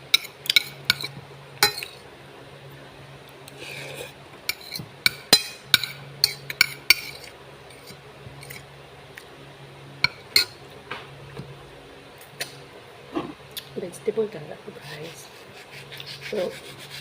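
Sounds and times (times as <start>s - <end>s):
low steady hum: 0.0s - 17.0s
utensils clinking against dish: 0.1s - 2.0s, 3.9s - 8.6s, 10.0s - 10.6s.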